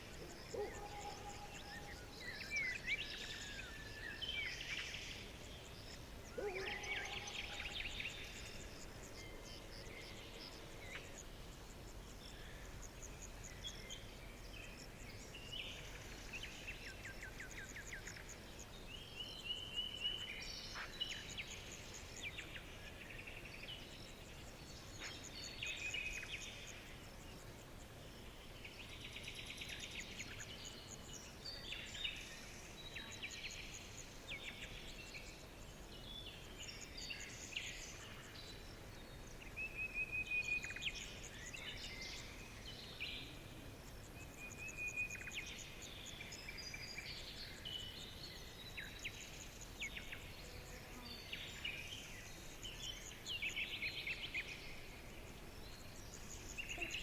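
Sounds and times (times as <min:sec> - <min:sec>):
songbirds chirping and singing: 0:00.0 - 0:27.4
faint steady hiss: 0:00.0 - 0:57.0.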